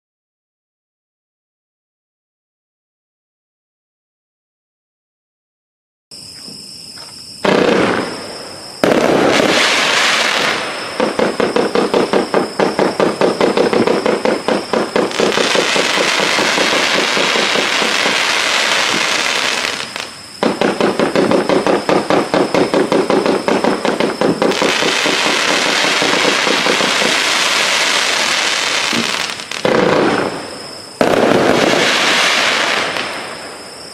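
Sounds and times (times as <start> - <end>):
firework bangs: 7.4 - 33.9
firework crackling: 7.4 - 33.9
rapid firework pops: 8.8 - 30.4, 31.0 - 33.3.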